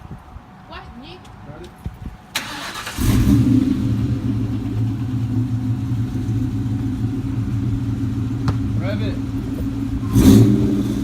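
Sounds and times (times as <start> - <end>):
engine cranking and idling: 2.3 - 11.0.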